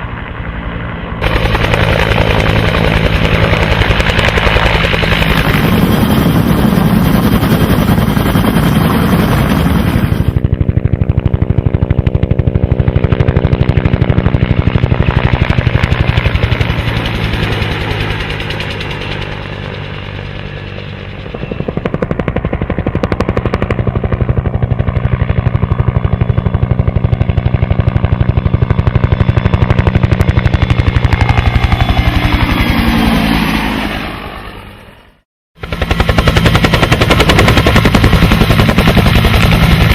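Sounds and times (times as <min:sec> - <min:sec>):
helicopter rotor chop: 0:00.0 - 0:35.0, 0:35.6 - 0:39.9
helicopter engine drone: 0:00.0 - 0:39.9.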